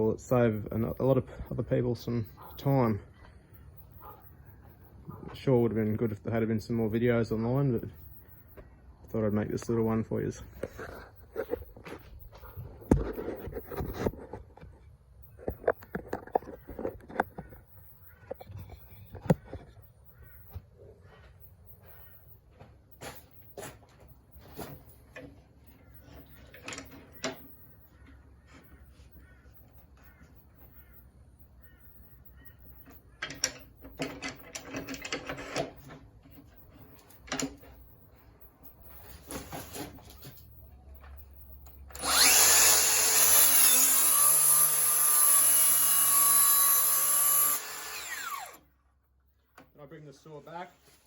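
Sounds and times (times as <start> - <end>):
clicks and knocks of handling: 32.8 - 37.8
track saw whining: 41.9 - 48.7.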